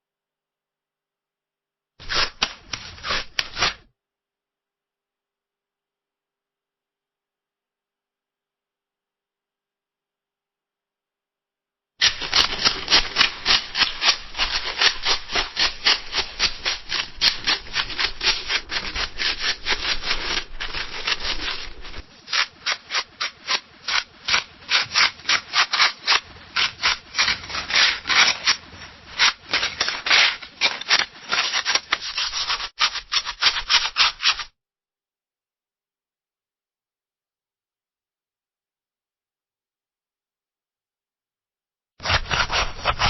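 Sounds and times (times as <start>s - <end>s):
scissors cutting paper: 2.0s - 3.9s, 12.0s - 34.5s, 42.0s - 43.0s.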